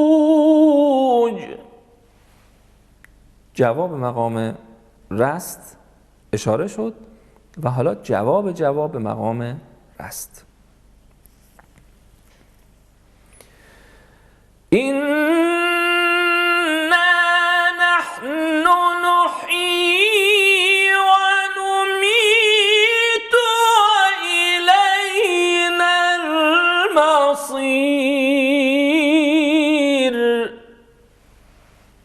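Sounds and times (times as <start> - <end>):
person chanting recitation: 0.0 - 1.8, 14.7 - 30.9.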